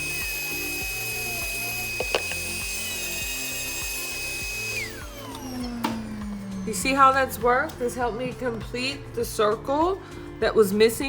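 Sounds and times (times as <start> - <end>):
rotary tool high whine: 0.0 - 8.2.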